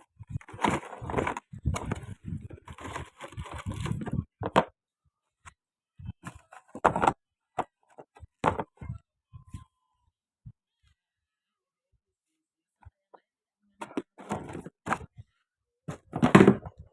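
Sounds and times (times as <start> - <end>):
packaging rustling: 0.4 - 4.2.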